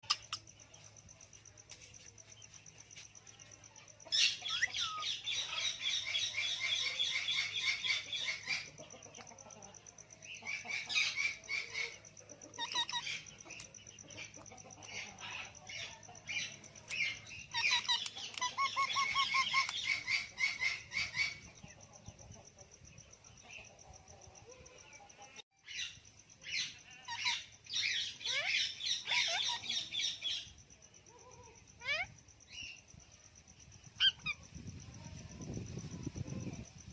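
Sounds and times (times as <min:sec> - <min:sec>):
parrots chattering and squawking: 0:00.0 - 0:00.6, 0:04.0 - 0:21.5, 0:25.7 - 0:30.6, 0:31.2 - 0:32.8, 0:33.9 - 0:34.6.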